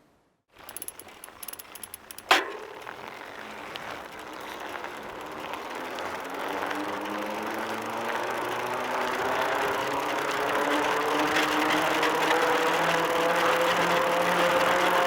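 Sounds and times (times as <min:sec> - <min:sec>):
bicycle rolling noise: 0:00.5 - 0:15.0
bicycle ticking clicks: 0:00.6 - 0:15.0
sharp clank: 0:00.7 - 0:02.9.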